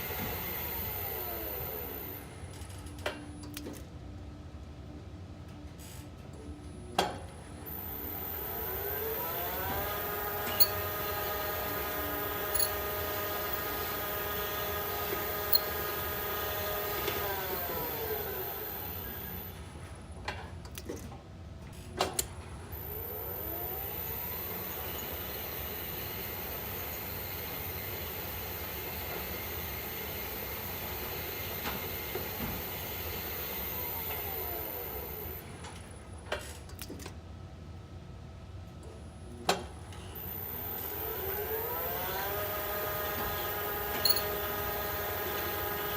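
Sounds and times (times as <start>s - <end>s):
elevator motor whine: 0.0s - 3.0s, 7.5s - 19.6s, 22.6s - 29.3s, 30.0s - 35.6s, 40.0s - 45.9s
sharp loud click: 44.0s - 44.3s.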